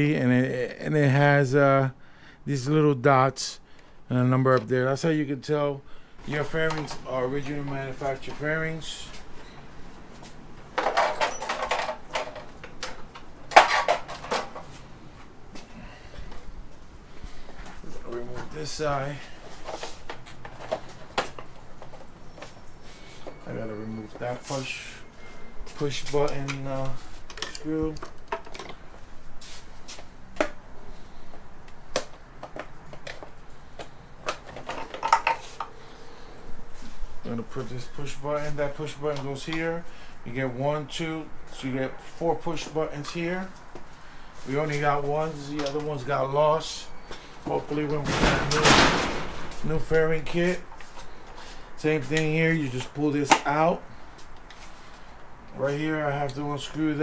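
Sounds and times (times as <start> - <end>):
plastic parts clattering and clicking: 6.2 - 14.9, 19.6 - 22.6, 26.0 - 28.8, 31.9 - 35.7, 47.8 - 49.9.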